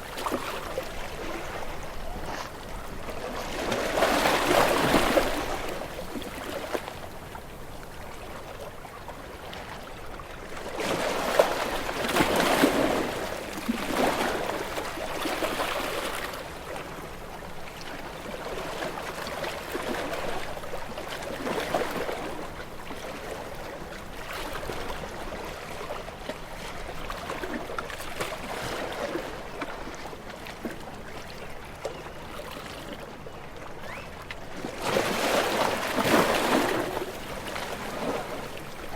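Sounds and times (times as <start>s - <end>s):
waves breaking against rocks: 34.6s - 38.9s.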